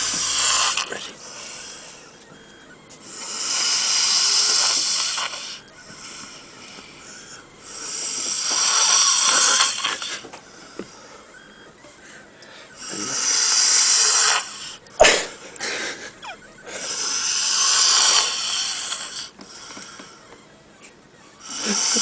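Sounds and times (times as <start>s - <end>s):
man snoring: 0.0s - 2.1s, 3.0s - 10.3s, 12.7s - 20.0s, 21.4s - 22.0s
quiet breathing: 0.0s - 20.5s.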